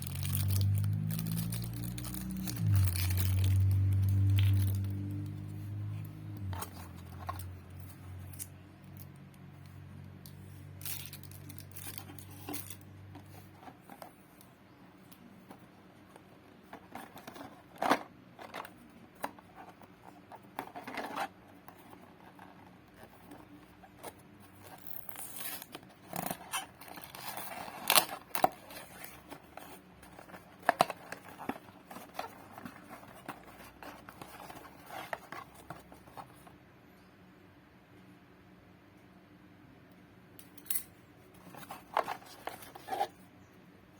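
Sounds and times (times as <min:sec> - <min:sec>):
packaging tearing: 0:00.0 - 0:05.1, 0:24.6 - 0:35.9
crinkling plastic and card: 0:00.0 - 0:36.5, 0:41.4 - 0:43.2
low steady hum: 0:00.0 - 0:43.9.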